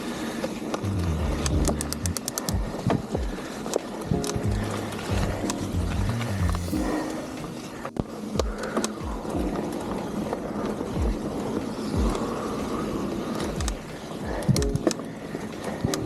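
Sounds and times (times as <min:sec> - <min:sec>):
tyre and wind rumble: 0:00.8 - 0:03.4, 0:04.0 - 0:06.9
bike rattling clicks: 0:01.4 - 0:03.0.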